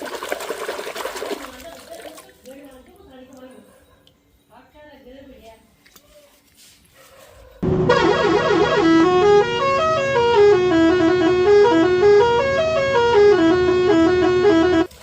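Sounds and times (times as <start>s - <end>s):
musical bus horn melody: 7.6s - 14.9s.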